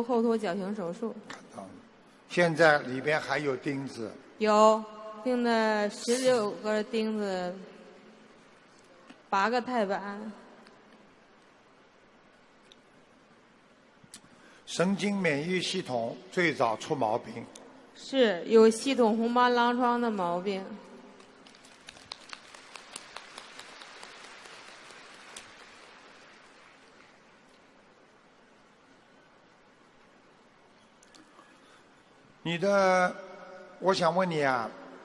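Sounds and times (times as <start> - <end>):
faint steady hiss: 0.0 - 35.0
audience applause: 21.4 - 27.2.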